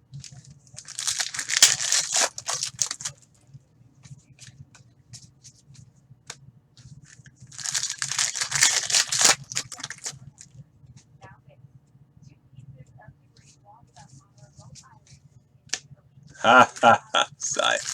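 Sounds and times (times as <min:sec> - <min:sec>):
card handling clicks and rustles: 0:00.1 - 0:03.3, 0:07.0 - 0:10.6, 0:17.5 - 0:17.9
card pack wrappers crinkling and tearing: 0:00.2 - 0:03.2, 0:07.2 - 0:10.5, 0:16.5 - 0:17.9.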